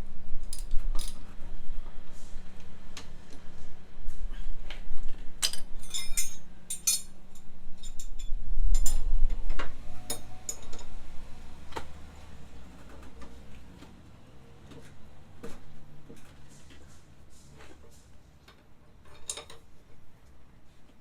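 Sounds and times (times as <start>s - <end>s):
metal tools clinking: 5.4s - 9.0s.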